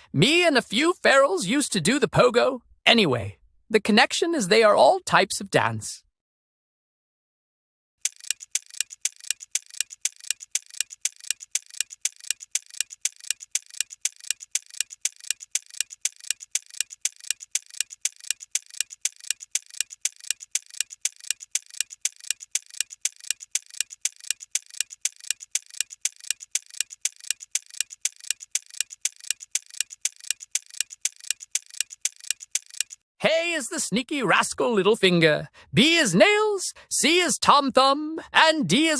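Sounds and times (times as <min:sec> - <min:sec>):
clock ticking: 0:08.0 - 0:33.0.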